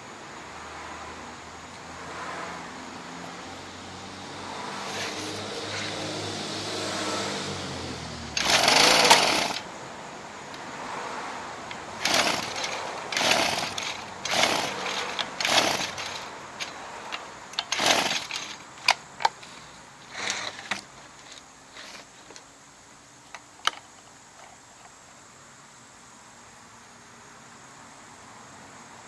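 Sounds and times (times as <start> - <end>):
rasping mechanical bursts: 4.6 - 9.8, 11.6 - 22.1.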